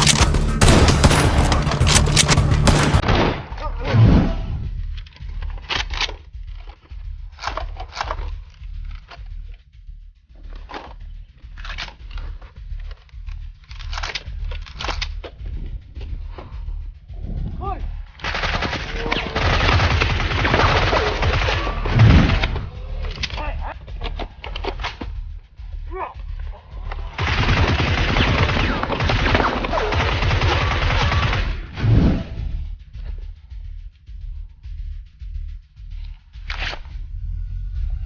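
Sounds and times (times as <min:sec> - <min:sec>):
gunshots: 0:00.0 - 0:04.5, 0:18.2 - 0:22.7, 0:27.0 - 0:32.4
low rumble: 0:00.0 - 0:29.7, 0:31.3 - 0:38.0
rapid automatic gunfire: 0:18.2 - 0:22.5, 0:27.2 - 0:31.8.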